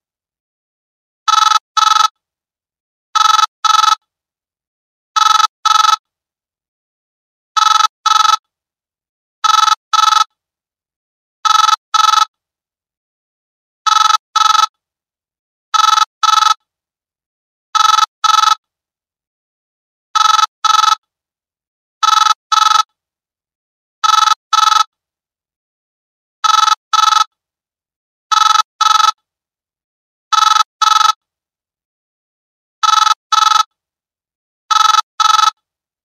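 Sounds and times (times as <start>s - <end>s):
old telephone ringing: 1.3s - 2.2s, 3.2s - 4.0s, 5.2s - 6.0s, 7.6s - 8.4s, 9.4s - 10.3s, 11.4s - 12.3s, 13.9s - 14.7s, 15.8s - 16.6s, 17.8s - 18.6s, 20.2s - 21.0s, 22.0s - 22.9s, 24.0s - 24.9s, 26.4s - 27.3s, 28.3s - 29.2s, 30.3s - 31.2s, 32.8s - 33.7s, 34.7s - 35.6s.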